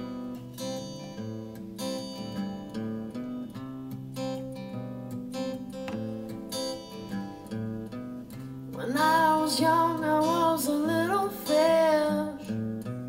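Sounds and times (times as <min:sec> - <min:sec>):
strummed acoustic guitar: 0:00.0 - 0:13.0
woman singing: 0:08.7 - 0:12.6.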